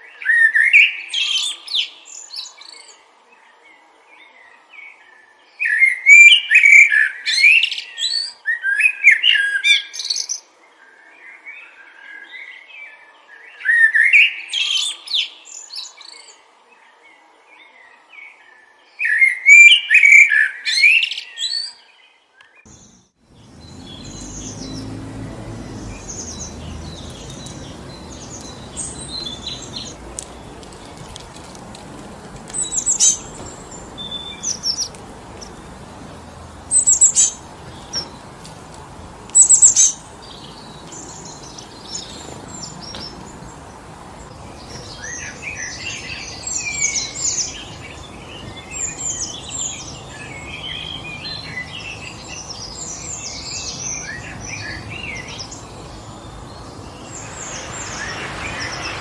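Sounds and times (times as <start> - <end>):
small birds chirping: 22.4 - 59.0
wind in the trees: 22.7 - 59.0.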